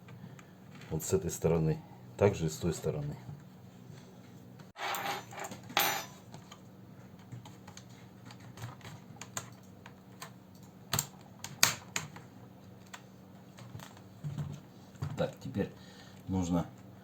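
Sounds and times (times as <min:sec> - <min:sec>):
sharp plastic snaps: 0:07.4 - 0:14.0.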